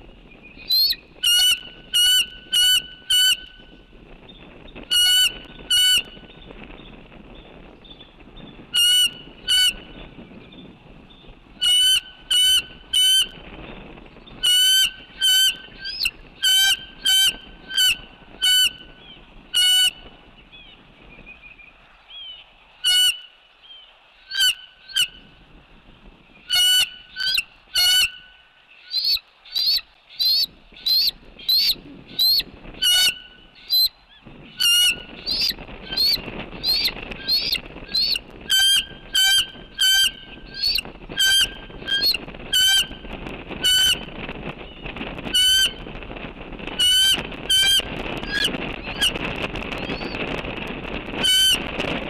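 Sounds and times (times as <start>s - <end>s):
loud bird calls: 26.4s - 42.8s
high bird chirps: 28.8s - 32.4s, 34.7s - 38.2s.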